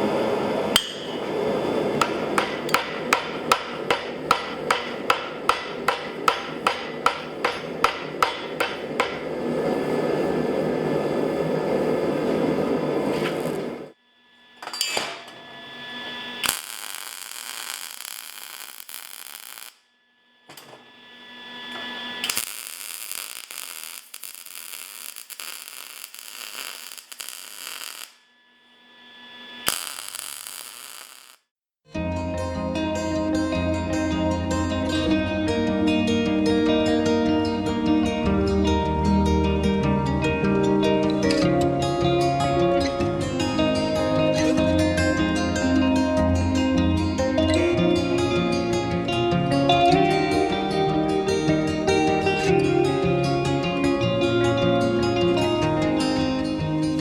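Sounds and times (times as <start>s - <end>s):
hammer striking an anvil: 0.8s - 9.3s.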